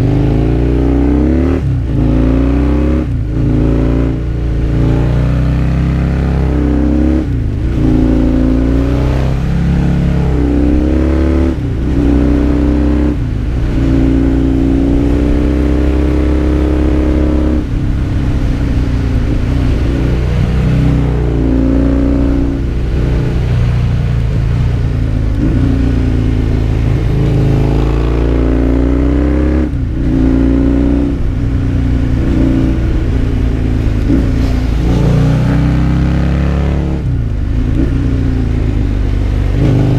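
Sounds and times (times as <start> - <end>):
motorcycle engine revving: 0.0 - 39.9
wind noise: 0.0 - 39.9.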